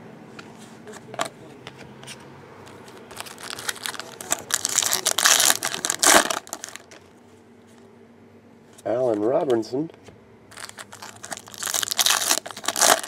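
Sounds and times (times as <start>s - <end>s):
foil wrapper crinkling and tearing: 2.9s - 7.0s, 10.5s - 13.0s.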